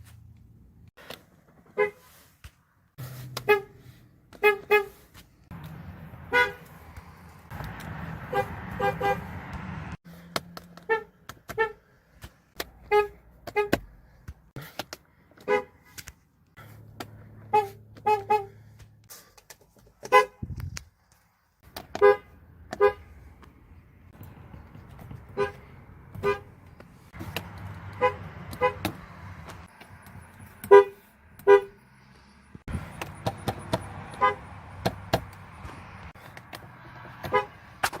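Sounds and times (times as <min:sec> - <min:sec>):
car horn toots: 0:01.7 - 0:02.1, 0:03.2 - 0:05.0, 0:06.3 - 0:06.7, 0:08.2 - 0:09.5, 0:10.8 - 0:11.8, 0:12.8 - 0:13.8, 0:15.4 - 0:15.8, 0:17.5 - 0:18.6, 0:20.1 - 0:20.5, 0:21.9 - 0:23.1, 0:25.3 - 0:26.6, 0:27.8 - 0:29.0, 0:30.6 - 0:31.8, 0:34.1 - 0:34.6, 0:37.2 - 0:37.6.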